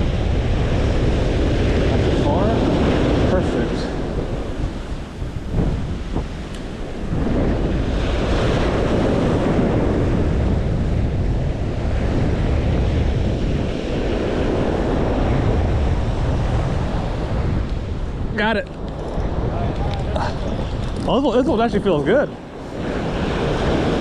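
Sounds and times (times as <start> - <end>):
ocean surf on beach: 0.0 - 24.0
wind buffeting microphone: 0.0 - 24.0.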